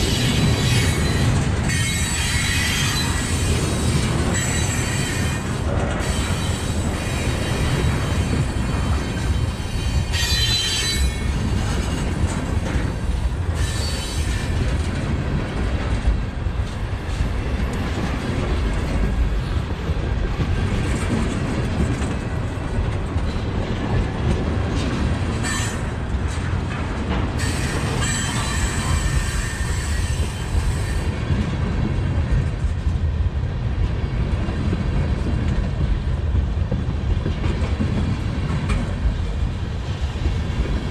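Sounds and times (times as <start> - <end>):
train wheels rumbling on rail: 0.0 - 40.9
high wheel squeals: 0.2 - 12.0, 13.6 - 14.8, 25.3 - 26.0, 27.4 - 31.1.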